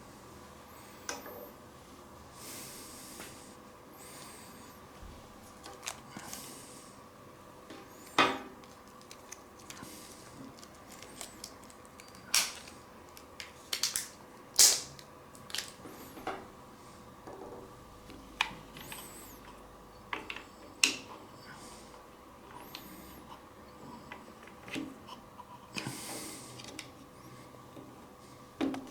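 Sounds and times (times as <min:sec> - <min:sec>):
packaging rustling: 0:05.4 - 0:06.5, 0:08.6 - 0:16.0
plastic parts clicking and tapping: 0:08.6 - 0:09.8, 0:10.4 - 0:15.8.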